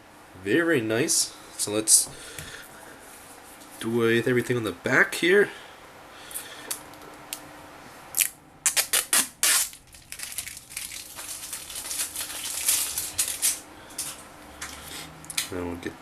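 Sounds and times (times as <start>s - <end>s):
plastic film peeling crackles: 8.2s - 15.5s.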